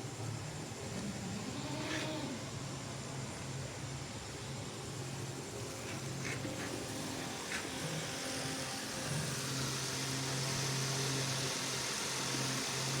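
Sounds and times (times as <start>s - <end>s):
low machine hum: 0.0s - 13.0s
hiss: 5.5s - 13.0s.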